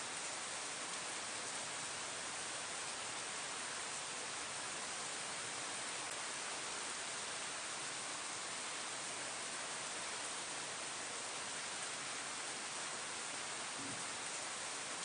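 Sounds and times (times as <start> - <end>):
rain falling on leaves: 0.0 - 15.0.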